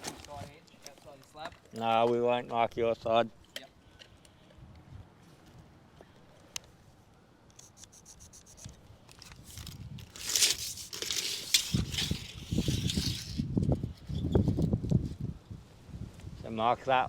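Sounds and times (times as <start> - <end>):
scraping on concrete: 7.6 - 14.3.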